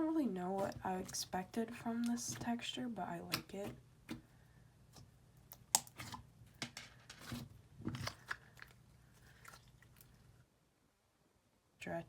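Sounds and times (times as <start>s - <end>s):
hands squishing slime: 7.2s - 10.2s.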